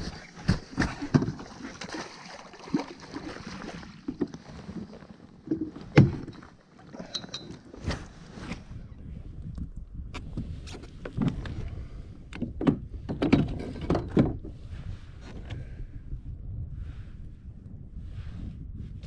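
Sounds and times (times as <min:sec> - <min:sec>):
knocks and bumps on kayak: 0:00.0 - 0:02.1, 0:12.4 - 0:14.6.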